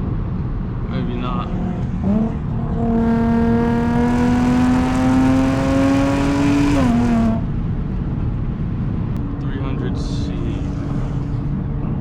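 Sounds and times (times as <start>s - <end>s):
car engine at full throttle: 1.6s - 9.1s.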